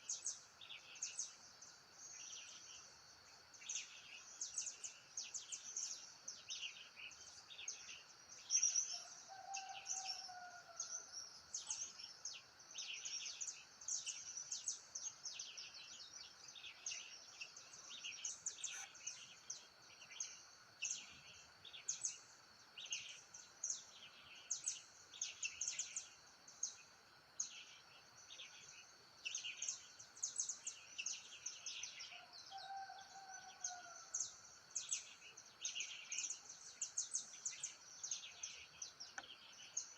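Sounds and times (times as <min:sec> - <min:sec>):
insect hum: 0:00.0 - 0:39.9
birds chirping: 0:16.6 - 0:22.1.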